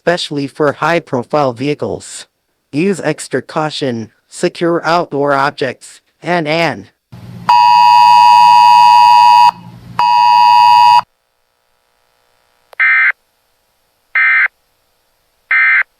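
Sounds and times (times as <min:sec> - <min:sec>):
loud buzzing electronic tones: 0:07.5 - 0:11.0.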